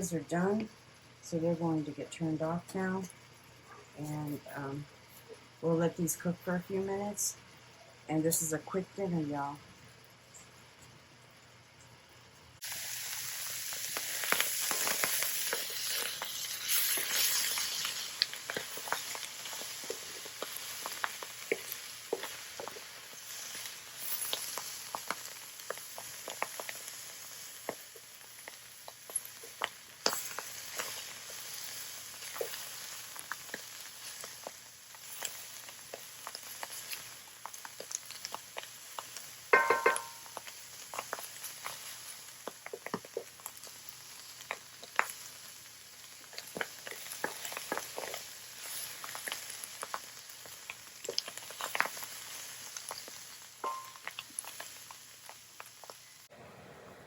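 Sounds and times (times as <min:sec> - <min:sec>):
vegetables sizzling in a skillet: 0:12.1 - 0:56.3.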